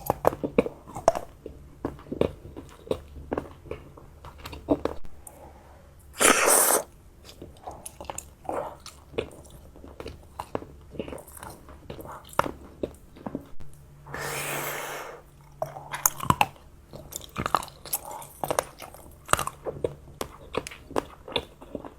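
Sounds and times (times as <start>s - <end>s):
chewing candy crunches: 15.9s - 21.9s.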